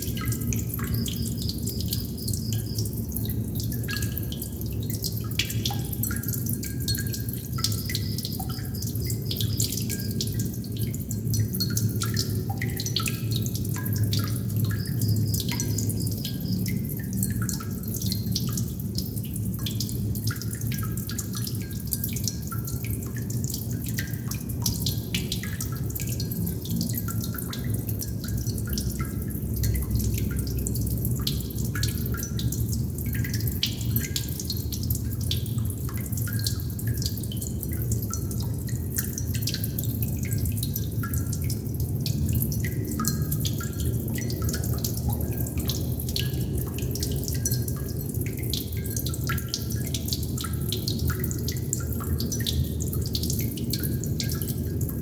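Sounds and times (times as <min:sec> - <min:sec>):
water droplets plinking: 0:00.0 - 0:41.6.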